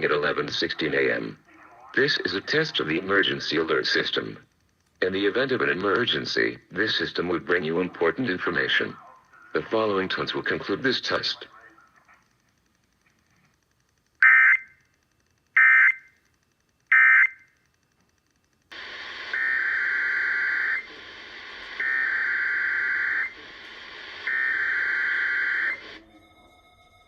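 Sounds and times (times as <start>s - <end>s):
radio receiver hiss: 0.0s - 26.0s.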